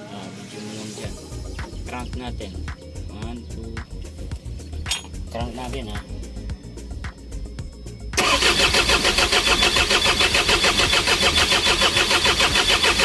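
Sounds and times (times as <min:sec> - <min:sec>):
starter motor cranking diesel engine: 0:08.2 - 0:13.0.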